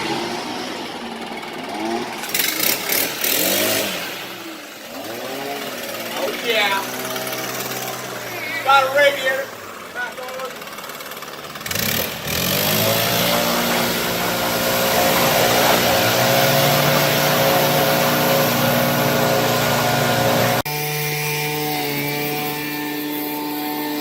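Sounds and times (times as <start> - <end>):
pressure washer engine running: 0.0 - 24.0
spray hissing: 12.0 - 20.6.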